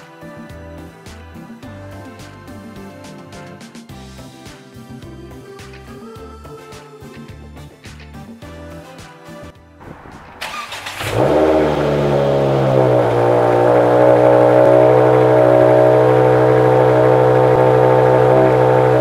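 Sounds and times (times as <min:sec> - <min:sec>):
music: 0:00.0 - 0:11.4
car engine starting and idling: 0:09.9 - 0:19.0.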